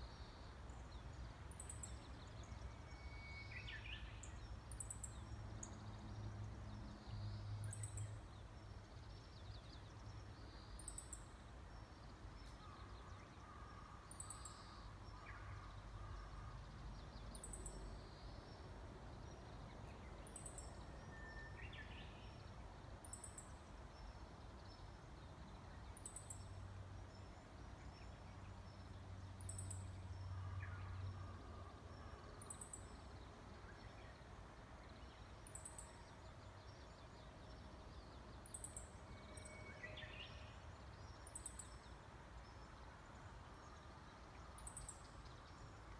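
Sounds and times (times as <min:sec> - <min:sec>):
bush warbler whistled song: 0:01.5 - 0:05.8, 0:20.0 - 0:23.5.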